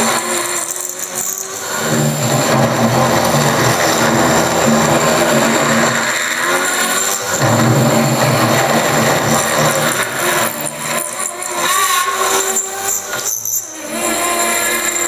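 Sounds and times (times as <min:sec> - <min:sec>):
milling machine spindle whine: 0:00.0 - 0:15.0.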